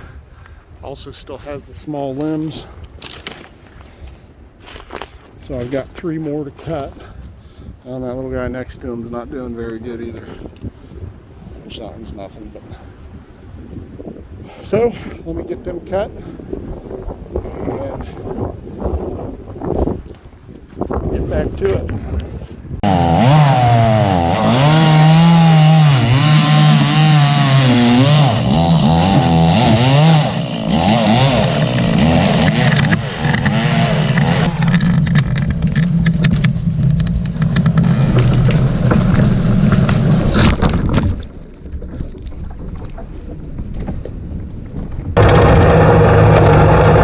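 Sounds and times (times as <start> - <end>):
chainsaw cutting wood: 22.8 - 41.0, 45.2 - 47.0.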